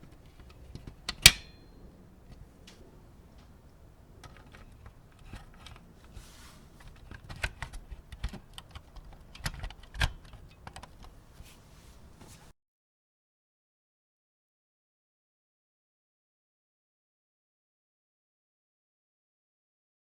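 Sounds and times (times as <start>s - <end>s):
clicks of small model parts: 6.8s - 11.2s.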